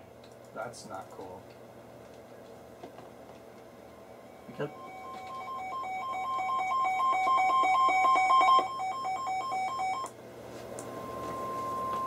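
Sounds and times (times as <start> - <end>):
steady warning alarm tone: 4.3 - 10.1, 10.9 - 12.0
two-tone alert beeping: 4.7 - 10.1.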